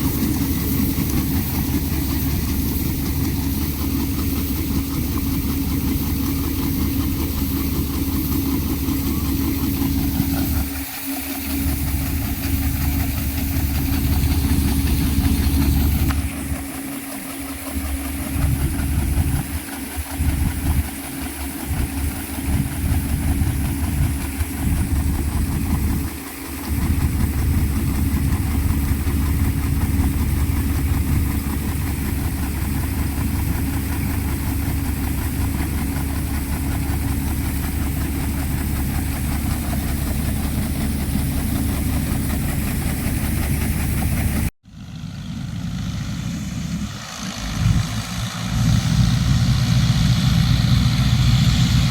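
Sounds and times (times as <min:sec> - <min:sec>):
harvesting machine engine rumbling: 0:00.0 - 0:51.9.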